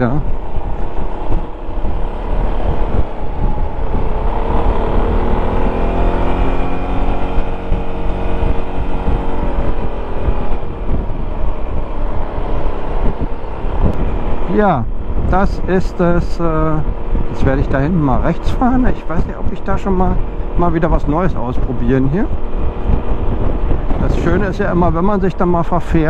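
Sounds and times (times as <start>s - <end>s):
wind rumble on microphone: 0.0s - 26.0s
scooter engine running: 0.3s - 15.1s.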